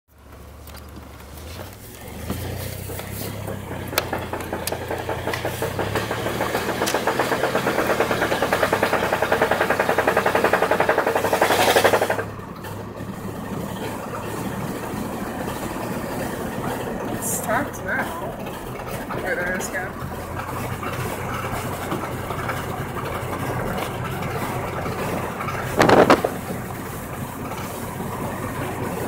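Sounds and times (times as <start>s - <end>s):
vehicle running: 0.1s - 29.0s.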